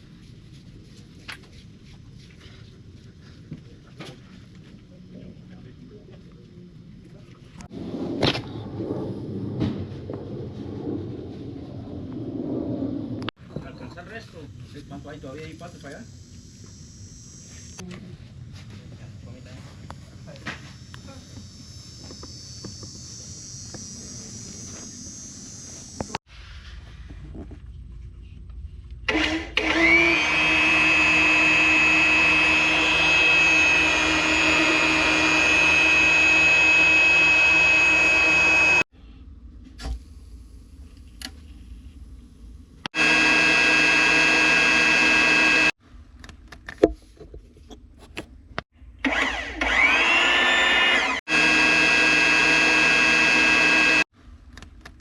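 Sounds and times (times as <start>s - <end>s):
power tool motor whining: 29.1s - 38.9s, 42.9s - 45.8s, 49.0s - 54.1s.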